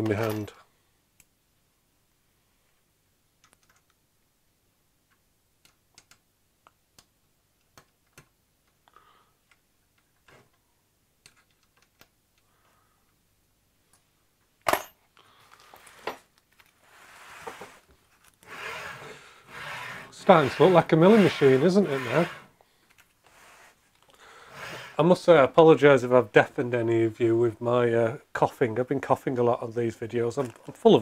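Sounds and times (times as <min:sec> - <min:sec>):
rubbing noise: 0:16.8 - 0:22.5.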